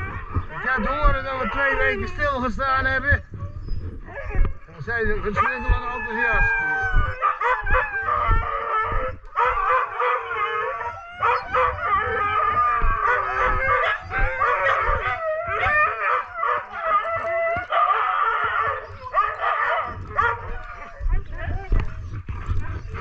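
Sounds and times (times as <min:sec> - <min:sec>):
huskies howling and yipping: 0:00.0 - 0:23.0.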